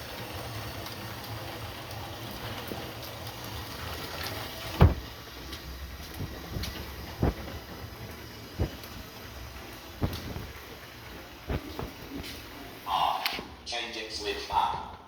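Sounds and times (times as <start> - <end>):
toy train humming on track: 0.0 - 11.5.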